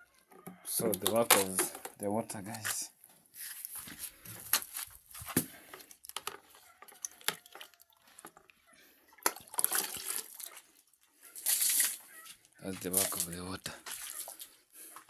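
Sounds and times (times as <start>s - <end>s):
water splashing: 9.2s - 12.2s, 12.8s - 14.6s.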